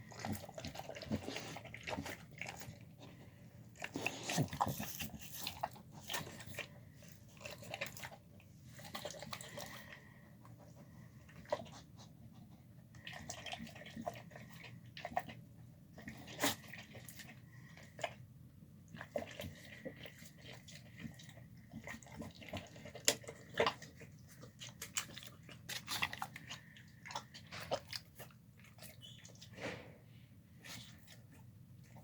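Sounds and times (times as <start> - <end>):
dog chewing wet food: 0.0 - 29.8, 30.5 - 32.0.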